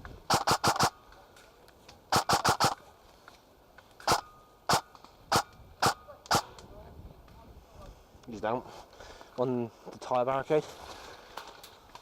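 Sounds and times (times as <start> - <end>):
airsoft gun shots: 0.3 - 1.0, 2.1 - 2.8, 4.1 - 6.6.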